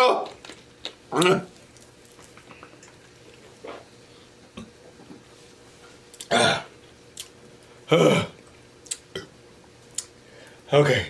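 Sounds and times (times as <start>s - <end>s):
man making throat noises: 7.9s - 8.4s.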